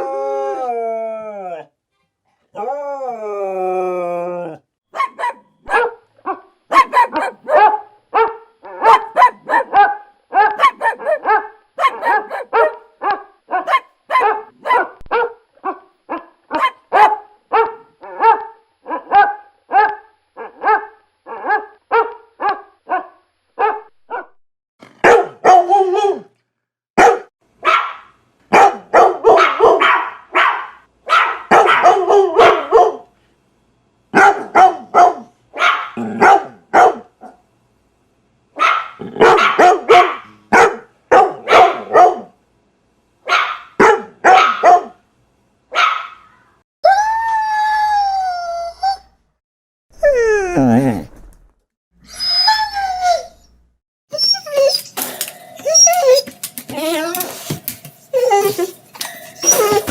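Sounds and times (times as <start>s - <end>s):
dog barking: 4.9s - 24.4s, 25.0s - 26.2s, 27.0s - 33.1s, 34.1s - 37.4s, 38.6s - 42.4s, 43.2s - 45.0s, 45.7s - 46.4s.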